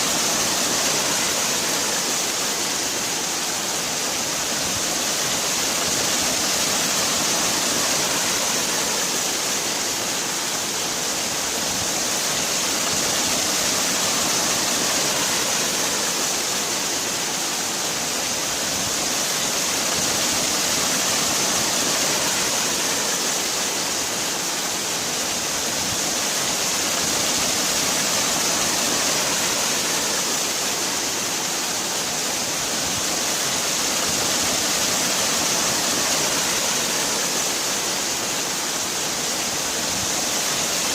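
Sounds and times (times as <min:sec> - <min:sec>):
waterfall rushing: 0:00.0 - 0:40.9.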